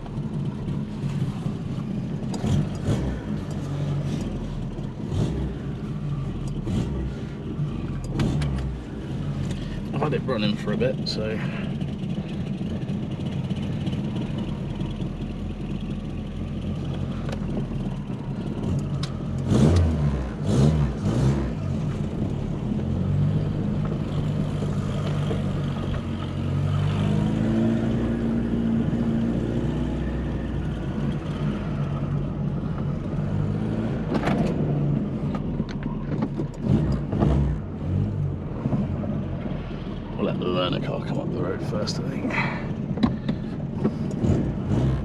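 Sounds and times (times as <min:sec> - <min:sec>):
car engine idling: 0:00.0 - 0:26.8, 0:37.6 - 0:44.8.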